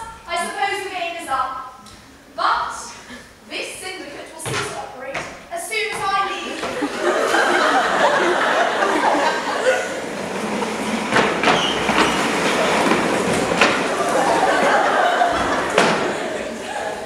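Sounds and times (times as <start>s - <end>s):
many voices: 5.6s - 17.0s.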